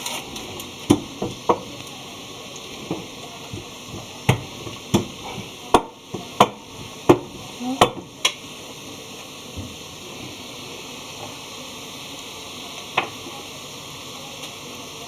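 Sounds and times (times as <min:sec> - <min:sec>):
dough sizzling in hot fat: 0:00.0 - 0:15.0.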